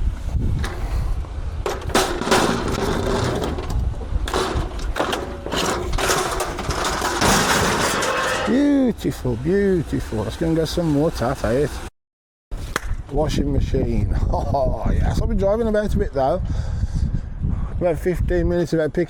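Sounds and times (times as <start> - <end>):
metal scraping and clanking: 0.5 - 8.7.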